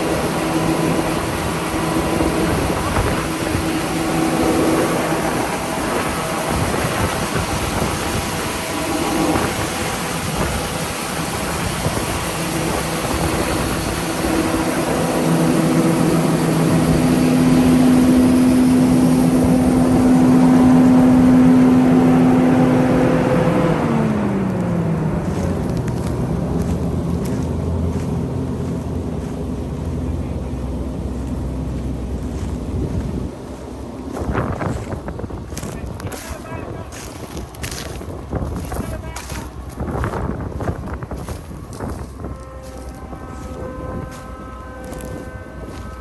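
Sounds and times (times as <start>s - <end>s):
combine harvester engine running: 0.0s - 46.0s.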